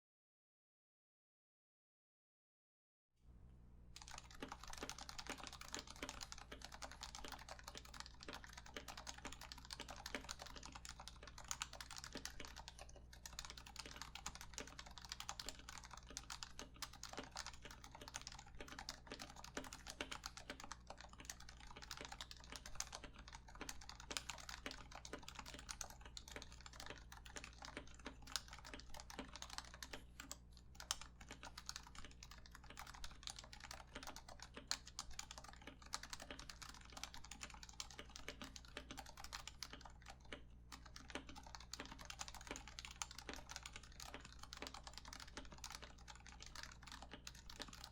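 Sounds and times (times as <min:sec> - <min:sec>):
fast typing on keyboard: 0:04.0 - 0:47.9.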